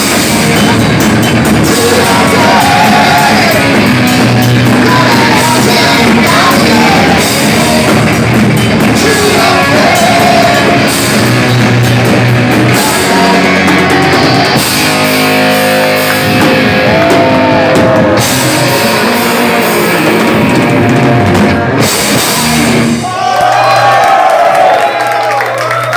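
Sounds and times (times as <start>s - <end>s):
distorted electric guitars: 0.0s - 23.2s
pounding drum kit and cymbals: 0.0s - 23.3s
heavy metal band playing: 0.0s - 23.4s.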